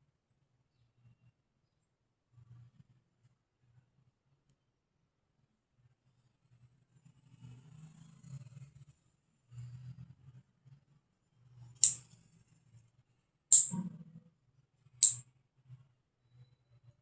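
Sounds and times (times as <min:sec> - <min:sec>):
nail clipper clipping nails: 0:13.6 - 0:13.8.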